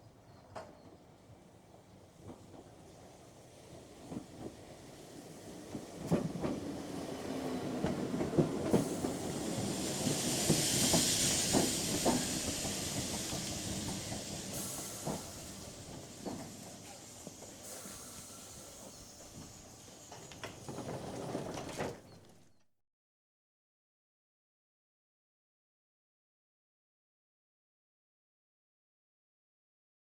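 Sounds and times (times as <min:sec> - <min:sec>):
electric train pulling in: 0:02.6 - 0:22.2
wheels clacking on rail joints: 0:05.5 - 0:22.7
loud hiss: 0:08.8 - 0:20.3.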